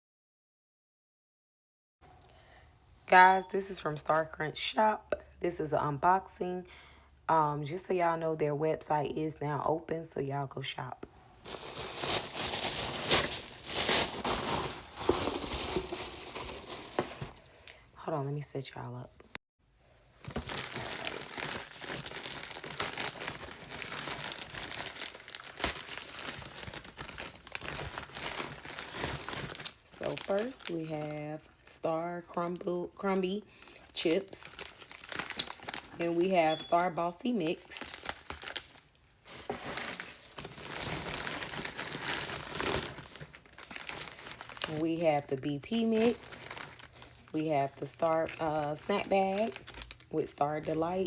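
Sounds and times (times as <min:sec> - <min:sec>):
plastic packaging crinkling: 0:11.4 - 0:17.7, 0:20.1 - 0:31.6, 0:33.2 - 0:36.8, 0:37.5 - 0:51.0.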